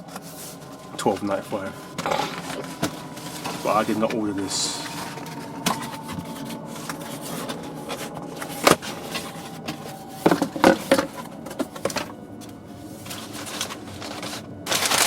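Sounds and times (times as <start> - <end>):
box packaging scraping and rubbing: 12.9 - 15.0.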